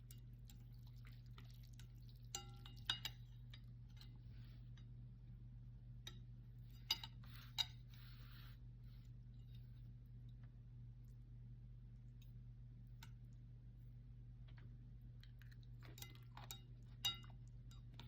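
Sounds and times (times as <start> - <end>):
steady low hum: 0.0 - 18.0
utensils clinking against bowl: 1.4 - 4.1, 15.8 - 18.0.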